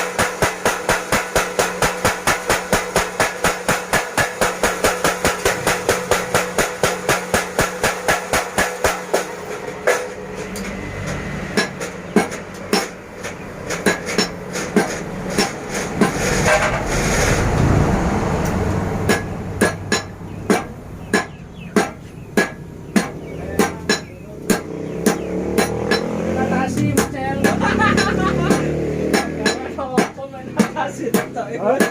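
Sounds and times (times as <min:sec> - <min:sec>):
hammer striking iron: 0:00.0 - 0:16.8, 0:19.0 - 0:31.9
steady mechanical noise: 0:00.0 - 0:31.9.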